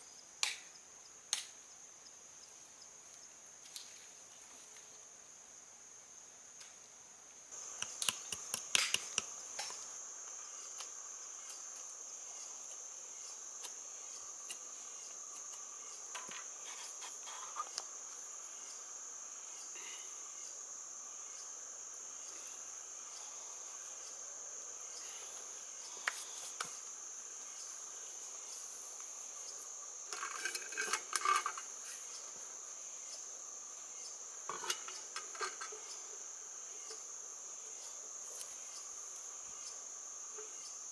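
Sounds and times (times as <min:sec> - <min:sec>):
insects trilling: 0:00.0 - 0:40.9
clinks and knocks: 0:30.1 - 0:31.7, 0:34.5 - 0:35.8.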